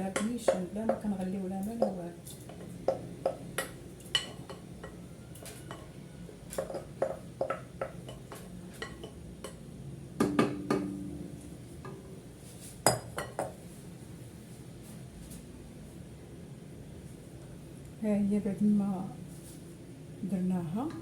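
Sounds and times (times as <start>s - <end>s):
utensils knocking on cooking pot: 6.6s - 9.6s, 10.2s - 11.2s.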